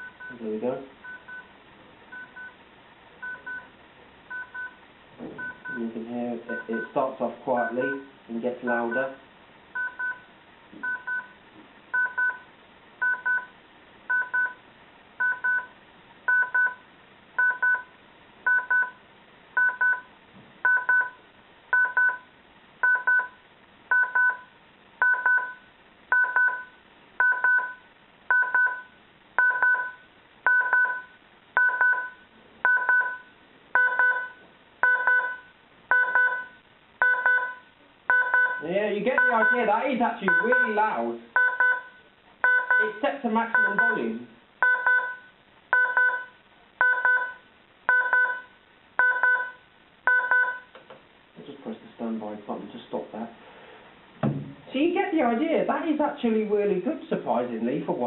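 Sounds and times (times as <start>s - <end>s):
alarm clock double beeps: 25.0s - 38.6s, 39.2s - 40.8s, 41.4s - 43.0s, 43.6s - 44.0s.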